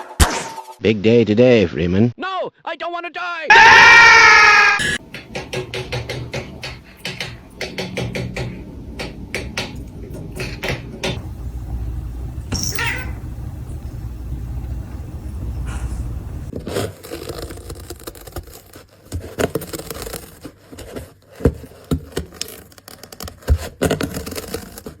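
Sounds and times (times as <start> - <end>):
sharp knocks: 5.0 - 11.2
low rumble: 13.1 - 16.5.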